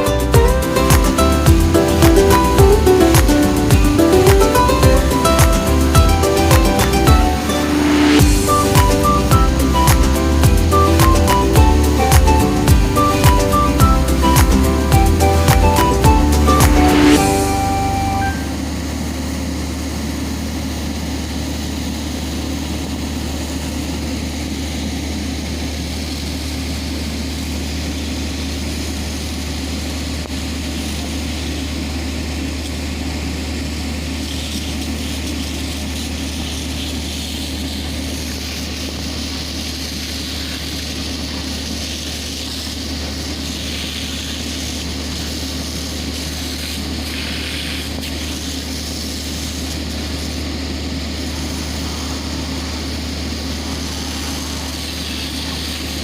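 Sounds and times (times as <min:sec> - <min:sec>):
heavy diesel engine droning: 0:00.0 - 0:20.5.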